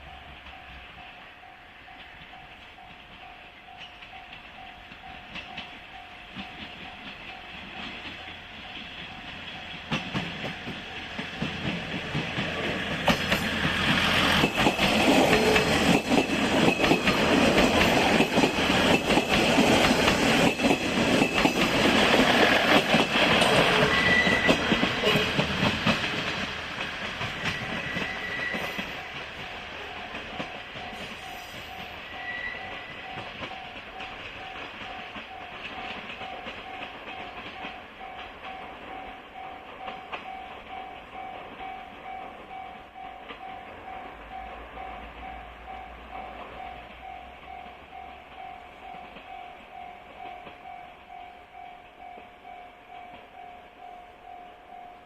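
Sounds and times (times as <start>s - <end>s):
train wheels clacking over rail joints: 2.0s - 40.5s.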